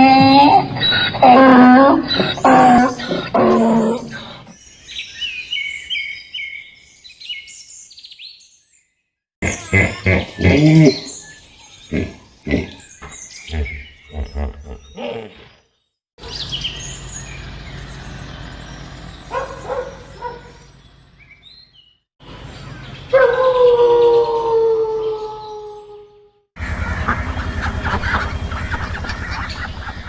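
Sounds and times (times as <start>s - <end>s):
long falling animal call: 0.0s - 4.4s
animal chirps: 0.0s - 4.5s, 9.4s - 15.6s.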